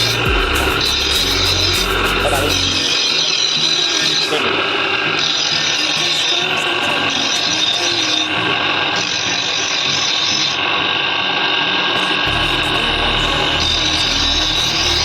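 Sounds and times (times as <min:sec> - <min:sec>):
deep bass line: 0:00.0 - 0:02.8, 0:12.3 - 0:15.0
dense noisy background music: 0:00.0 - 0:06.1, 0:12.2 - 0:15.0.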